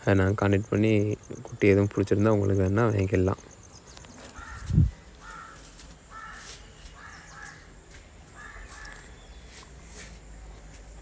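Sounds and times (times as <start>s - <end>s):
crows cawing: 4.3s - 9.2s.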